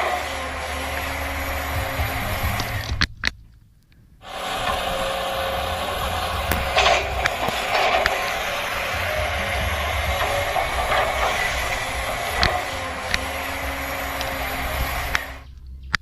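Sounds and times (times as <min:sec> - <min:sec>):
small motors and gears running: 0:00.0 - 0:03.0, 0:04.3 - 0:15.5
scraping: 0:00.0 - 0:16.0
clicks: 0:06.0 - 0:16.0.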